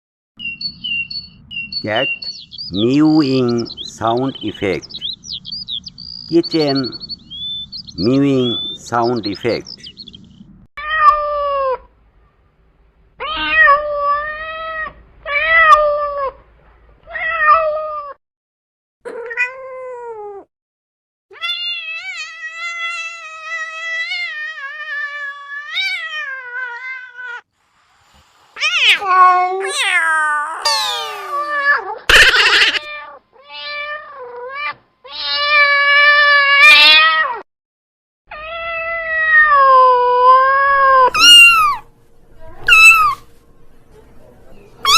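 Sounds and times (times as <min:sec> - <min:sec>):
cats meowing: 0:10.8 - 0:11.9, 0:13.2 - 0:16.4, 0:17.0 - 0:18.2, 0:21.3 - 0:27.4, 0:28.6 - 0:37.4, 0:38.3 - 0:41.9, 0:42.5 - 0:43.3.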